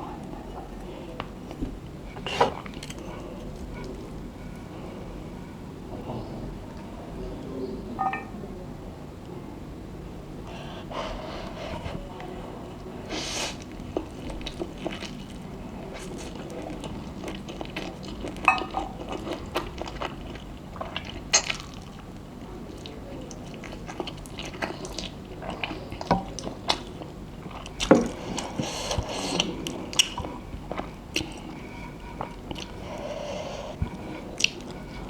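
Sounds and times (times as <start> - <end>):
wet chewing and biting: 13.5 - 32.8, 33.7 - 35.0.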